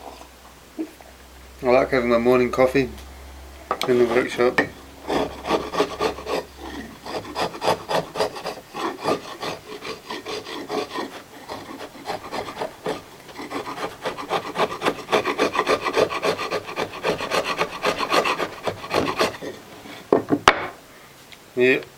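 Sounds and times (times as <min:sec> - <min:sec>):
hand tool scraping on wood: 0:03.8 - 0:20.1.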